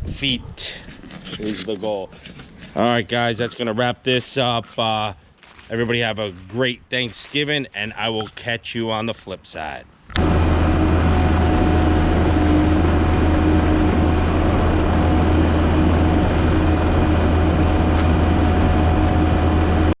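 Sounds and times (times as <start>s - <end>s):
diesel engine droning: 10.2s - 20.0s
faint steady whine: 10.2s - 20.0s.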